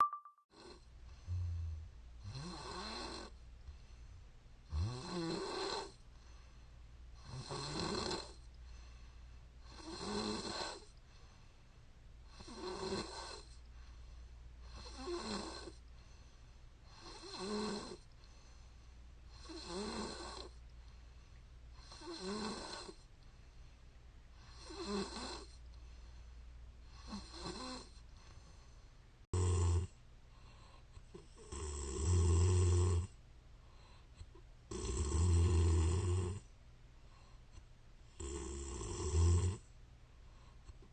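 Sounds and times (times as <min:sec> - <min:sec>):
low steady hum: 0:00.0 - 0:02.3, 0:03.3 - 0:04.7, 0:13.6 - 0:14.7, 0:23.0 - 0:24.4, 0:25.6 - 0:26.9
woman snoring: 0:01.3 - 0:03.3, 0:04.7 - 0:06.0, 0:07.2 - 0:08.4, 0:09.7 - 0:10.9, 0:12.3 - 0:13.5, 0:14.7 - 0:15.8, 0:16.9 - 0:18.0, 0:19.3 - 0:20.6, 0:21.8 - 0:23.0, 0:24.5 - 0:25.6, 0:27.0 - 0:28.0, 0:29.4 - 0:29.9, 0:31.4 - 0:33.1, 0:34.7 - 0:36.4, 0:38.2 - 0:39.6.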